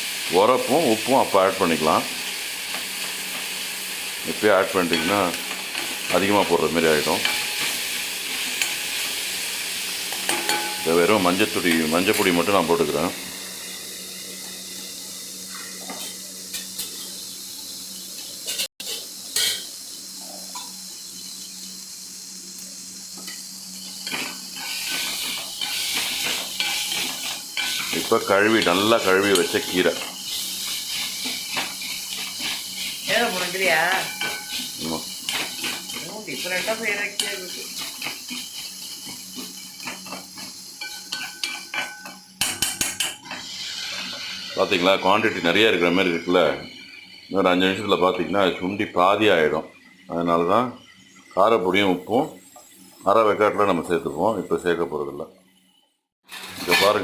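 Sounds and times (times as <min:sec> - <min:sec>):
masala sizzling in a pan: 0:00.0 - 0:57.0
spoon clinking against pan: 0:10.2 - 0:11.0, 0:37.1 - 0:43.3
spatula scraping metal pan: 0:24.0 - 0:42.2, 0:56.3 - 0:57.0.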